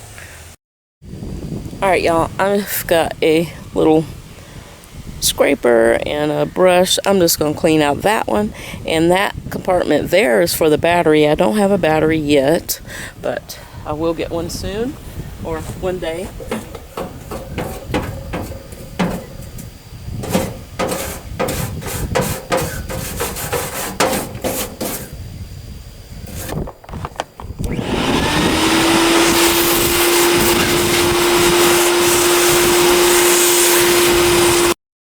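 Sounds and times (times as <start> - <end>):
rush of air: 3.5 - 5.2, 14.6 - 23.6, 27.5 - 34.8
scraper and brush scraping: 15.4 - 25.2, 26.2 - 26.6, 28.9 - 34.7
electric motor whining: 27.5 - 34.8.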